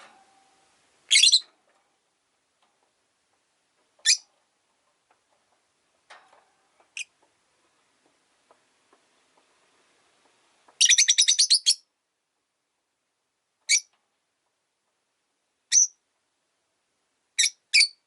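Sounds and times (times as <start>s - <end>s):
lovebird shrill chirps: 1.1s - 1.4s, 4.0s - 4.3s, 10.8s - 11.9s, 13.7s - 13.9s, 15.7s - 16.0s, 17.4s - 18.0s.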